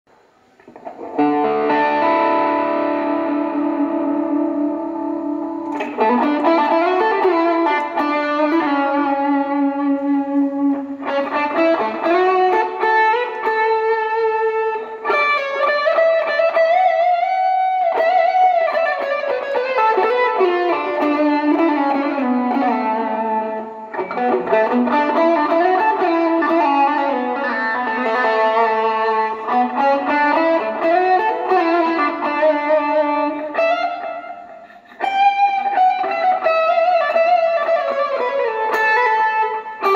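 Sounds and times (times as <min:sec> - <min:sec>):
overdriven electric guitar lead: 0:00.1 - 0:39.9.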